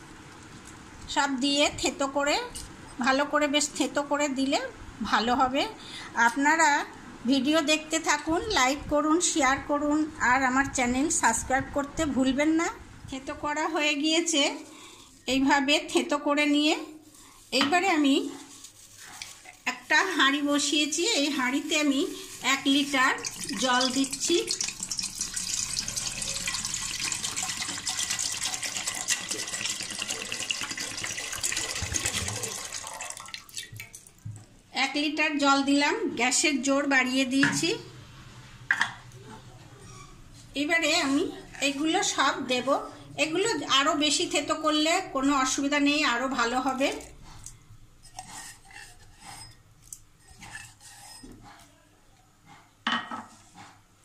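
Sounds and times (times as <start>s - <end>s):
water pouring into metal pot: 22.2s - 34.1s
spices scraped from metal mortar: 48.0s - 51.4s.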